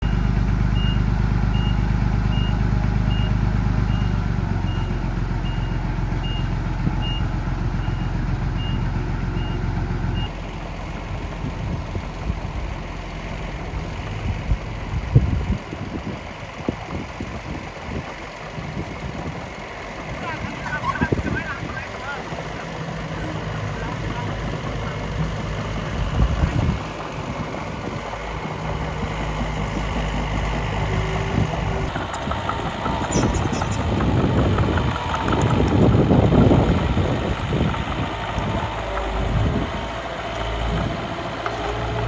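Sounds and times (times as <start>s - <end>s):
reversing alarm beeping: 0.0s - 10.3s, 29.7s - 36.8s
engine drone: 0.0s - 42.0s.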